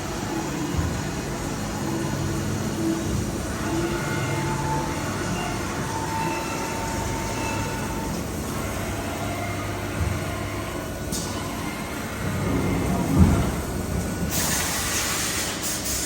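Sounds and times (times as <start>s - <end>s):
milling machine humming: 0.0s - 15.9s.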